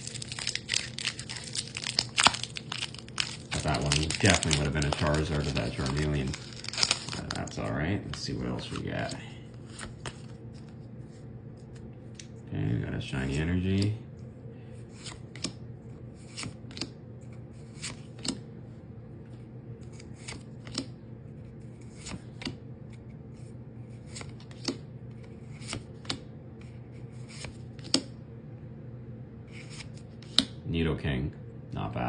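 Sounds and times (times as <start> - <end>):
low steady hum: 0.0 - 32.0
cards swishing and snapping: 21.8 - 23.0, 24.1 - 26.2.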